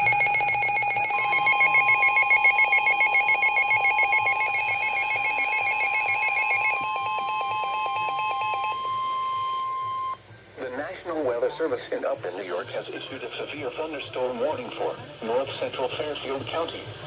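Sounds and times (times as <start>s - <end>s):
steady single-pitch alarm tone: 0.0s - 10.2s
warbling two-tone alarm: 0.0s - 10.2s.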